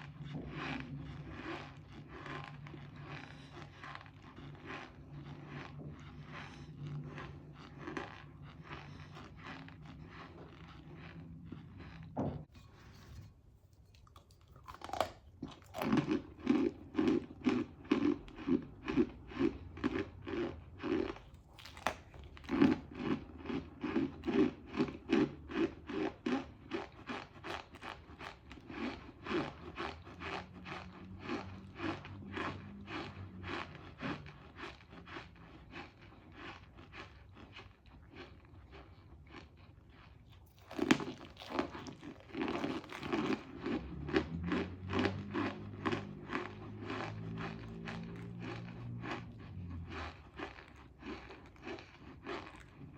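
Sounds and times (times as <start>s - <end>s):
rhythmic chewing: 0.0s - 52.9s
crunchy bite: 14.0s - 29.6s, 40.5s - 49.3s.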